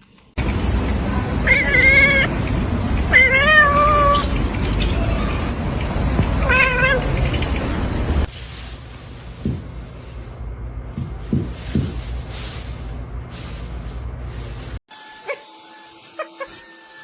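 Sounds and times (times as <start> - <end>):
steady low rumble: 0.4 - 14.8
cat yowling: 1.1 - 4.4, 5.0 - 7.2.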